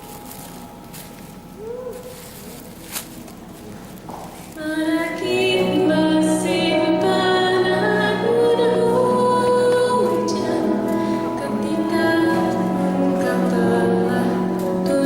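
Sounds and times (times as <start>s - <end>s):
electric keyboard chords: 4.6s - 15.0s
woman singing: 4.6s - 15.0s.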